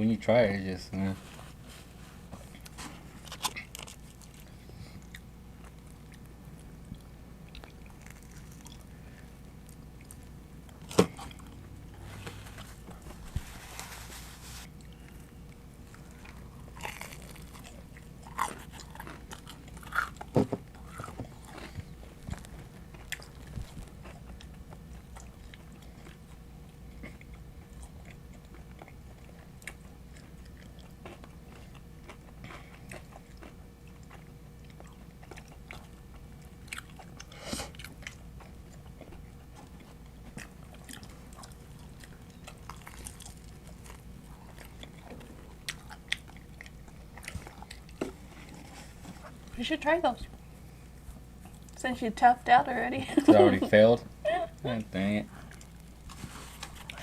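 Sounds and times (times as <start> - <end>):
chewing with wet mouth clicks: 5.0 - 11.6, 14.7 - 48.3, 55.3 - 56.0.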